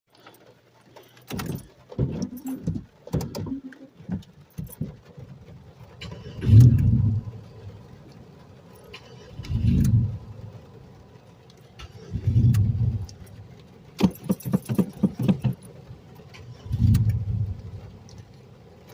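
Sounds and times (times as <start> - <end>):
irregular clicks and knocks: 0.1 - 7.1, 11.4 - 18.9
car engine starter cranking: 0.1 - 10.5, 11.4 - 18.9.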